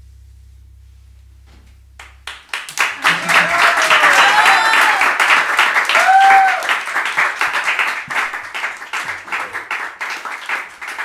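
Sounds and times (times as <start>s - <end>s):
small audience applauding: 2.0s - 11.0s
person cheering: 2.8s - 7.0s.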